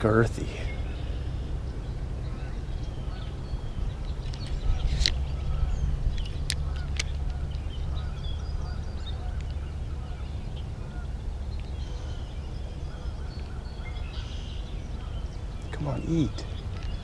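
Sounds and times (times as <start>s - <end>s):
faint bird calls: 0.0s - 17.0s
wind rumble on microphone: 0.0s - 17.0s
sharp clicks: 6.1s - 7.7s.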